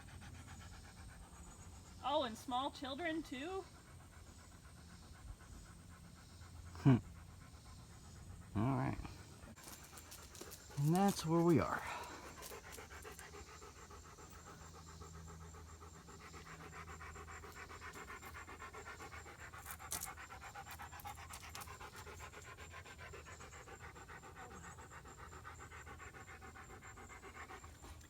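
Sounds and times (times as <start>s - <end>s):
dog panting: 0.0s - 28.0s.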